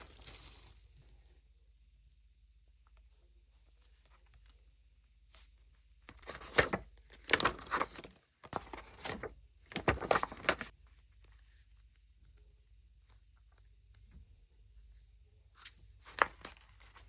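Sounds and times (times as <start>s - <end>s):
packaging crinkling and tearing: 0.0s - 0.9s.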